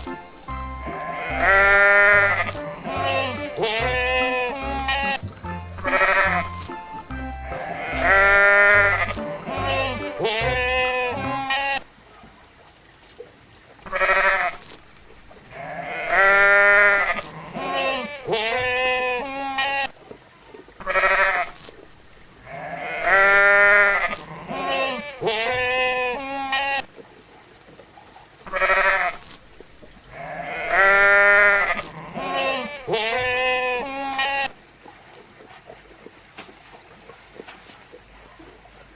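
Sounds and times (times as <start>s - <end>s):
sheep or goats bleating: 0.8s - 6.8s, 7.5s - 11.9s, 13.8s - 14.6s, 15.5s - 20.0s, 22.5s - 26.9s, 28.5s - 29.2s, 30.1s - 34.6s.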